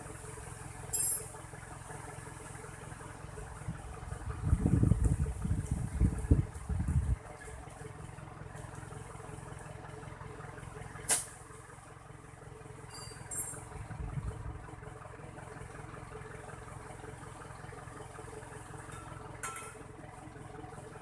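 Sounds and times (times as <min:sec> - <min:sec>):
vehicle engine idling: 0:00.0 - 0:21.0
sharp click: 0:11.1 - 0:11.3.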